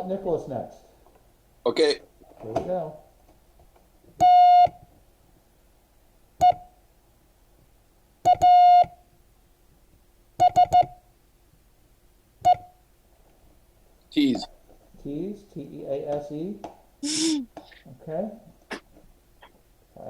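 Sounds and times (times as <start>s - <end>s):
morse code beeps: 4.2s - 4.7s, 8.3s - 8.9s, 10.4s - 11.0s.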